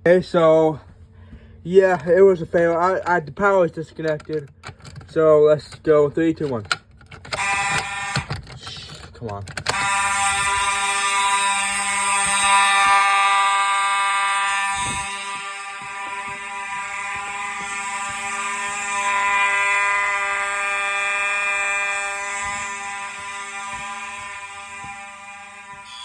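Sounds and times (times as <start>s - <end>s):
fire alarm horn buzzing: 7.3s - 8.5s, 9.6s - 26.0s.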